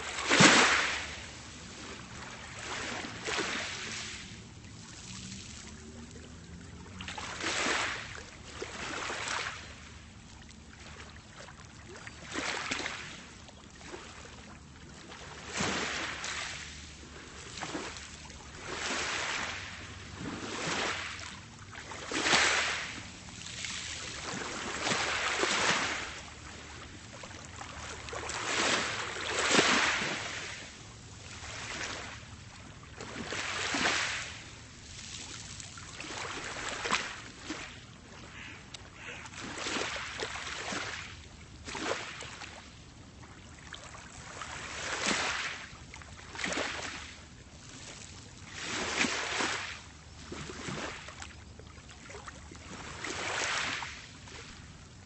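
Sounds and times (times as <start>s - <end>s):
waves washing onto pebble beach: 0.0s - 1.3s.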